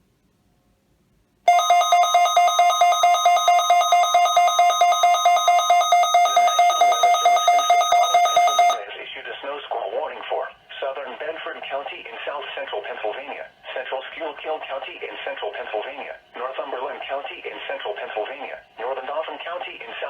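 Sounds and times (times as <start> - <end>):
steady alarm tone: 1.5 - 8.8.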